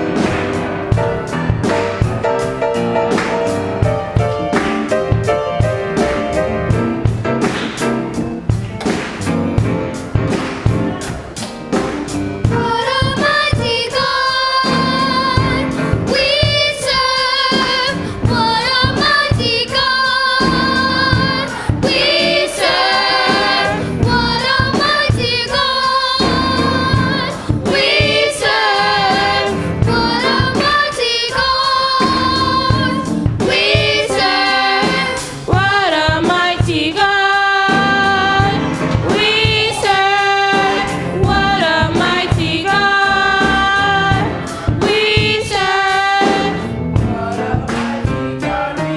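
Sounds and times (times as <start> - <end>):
band with drum beat: 0.0 - 48.9
voices singing gospel: 0.0 - 48.9.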